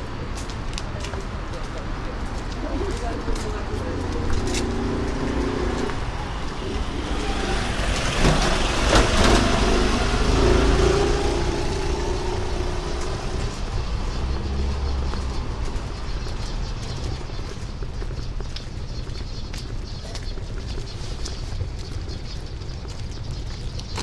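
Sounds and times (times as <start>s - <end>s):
low traffic rumble: 0.0s - 24.0s
vehicle passing by: 3.6s - 16.6s.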